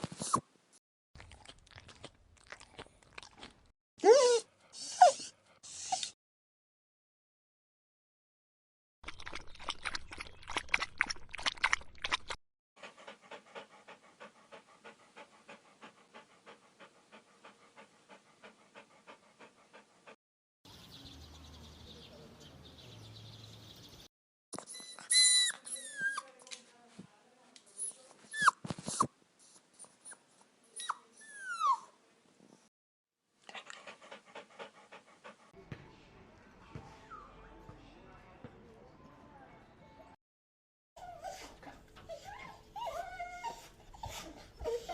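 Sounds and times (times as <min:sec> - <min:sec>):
dog whimpering: 0:04.0 - 0:06.2, 0:24.6 - 0:26.3, 0:41.0 - 0:44.9
dog panting: 0:12.8 - 0:20.2, 0:33.4 - 0:35.6, 0:41.0 - 0:44.9.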